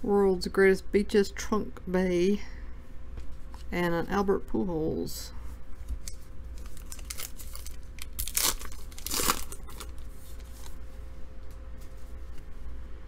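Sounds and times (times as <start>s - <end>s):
wrapper tearing and crinkling: 6.5s - 10.1s.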